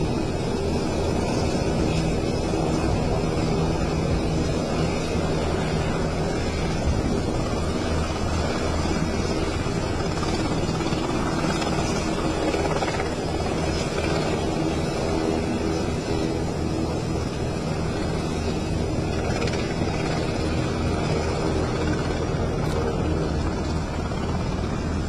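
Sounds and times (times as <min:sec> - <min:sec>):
helicopter engine and rotor: 0:00.0 - 0:25.0.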